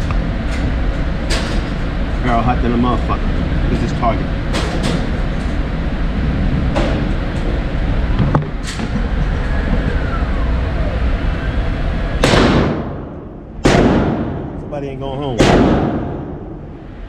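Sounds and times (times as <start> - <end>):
low rumble: 0.0 - 17.0
gunshots with ringing echo: 12.2 - 14.7, 15.4 - 16.7.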